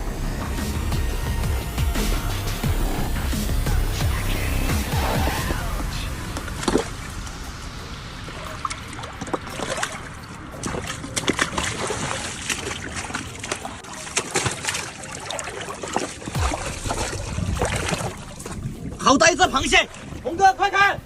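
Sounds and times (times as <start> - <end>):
seawater splashing among rocks: 4.7 - 20.8.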